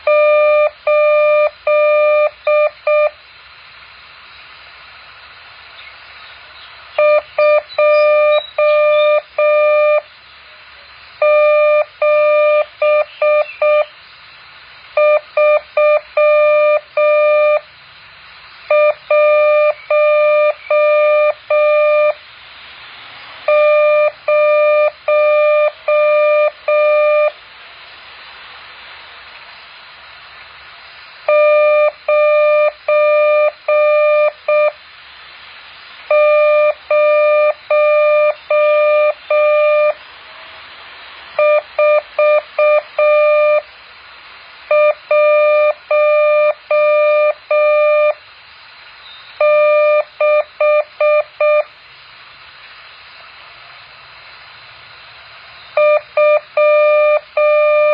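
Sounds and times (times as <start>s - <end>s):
morse code beeps: 0.0s - 3.2s, 7.0s - 10.0s, 11.2s - 13.9s, 15.0s - 17.6s, 18.7s - 22.2s, 23.5s - 27.4s, 31.3s - 34.8s, 36.1s - 40.0s, 41.4s - 43.7s, 44.7s - 48.2s, 49.4s - 51.7s, 55.8s - 57.9s
faint steady hiss: 0.0s - 57.9s.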